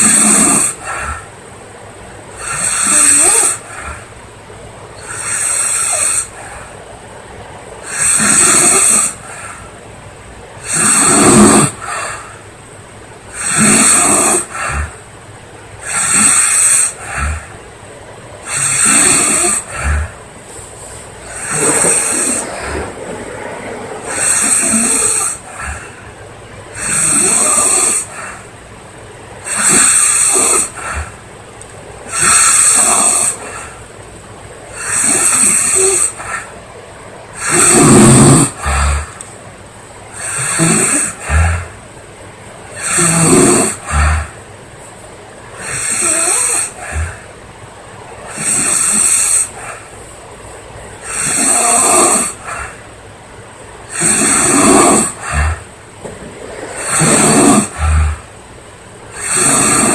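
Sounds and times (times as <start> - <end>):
girl snoring loudly: 0.0 - 1.3, 2.4 - 4.1, 7.8 - 9.4, 10.6 - 12.2, 13.4 - 15.0, 15.8 - 17.5, 18.4 - 20.2, 21.2 - 26.0, 26.7 - 28.4, 29.4 - 31.2, 32.1 - 33.8, 34.8 - 36.4, 37.4 - 39.2, 40.2 - 41.8, 42.8 - 44.4, 45.6 - 47.3, 48.3 - 49.8, 51.0 - 52.8, 53.9 - 55.7, 56.7 - 58.3, 59.1 - 59.9
quiet breathing: 0.0 - 37.7, 38.4 - 59.9.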